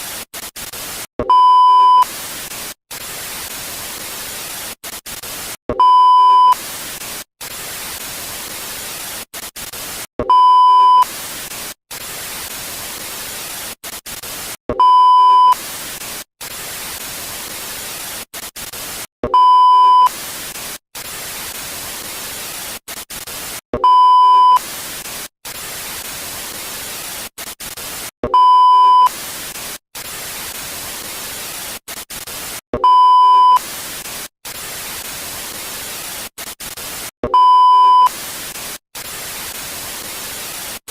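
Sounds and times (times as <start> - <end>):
tv static hiss: 0.0 - 40.9
loud steady beep: 1.2 - 2.1, 5.8 - 6.6, 10.3 - 11.1, 14.8 - 15.6, 19.3 - 20.1, 23.8 - 24.6, 28.3 - 29.1, 32.8 - 33.6, 37.3 - 38.1.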